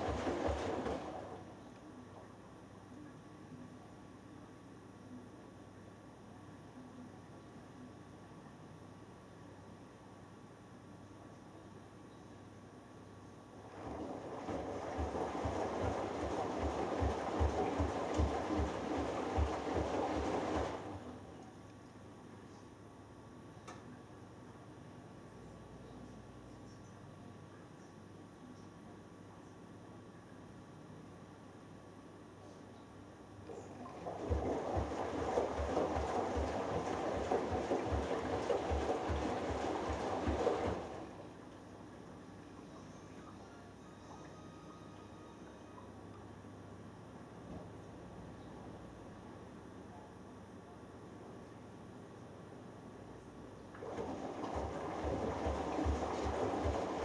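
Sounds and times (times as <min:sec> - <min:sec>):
water and laundry sloshing: 0:00.0 - 0:01.6, 0:13.6 - 0:21.4, 0:33.4 - 0:41.6, 0:53.7 - 0:57.0
washing machine drum turning: 0:13.8 - 0:21.0, 0:53.8 - 0:57.0.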